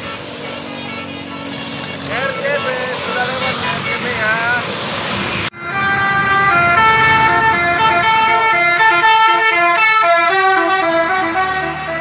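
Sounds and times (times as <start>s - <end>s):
multi-tone bus horn tune: 0.0s - 4.6s, 5.5s - 12.0s.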